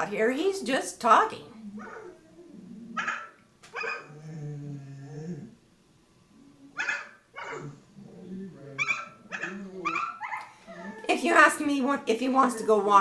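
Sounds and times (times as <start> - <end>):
dog barking: 3.0 - 4.1, 6.8 - 7.8, 8.8 - 10.5.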